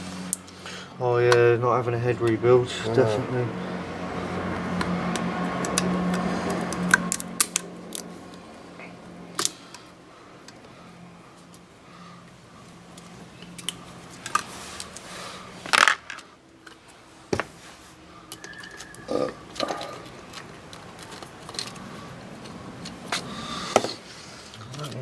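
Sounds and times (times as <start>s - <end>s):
metal parts and tools clinking: 13.0s - 16.8s.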